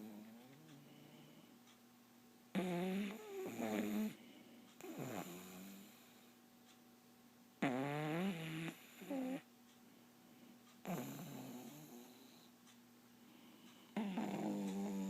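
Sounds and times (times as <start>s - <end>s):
person snoring: 2.6s - 4.2s, 4.8s - 5.9s, 10.8s - 12.3s, 14.0s - 15.0s.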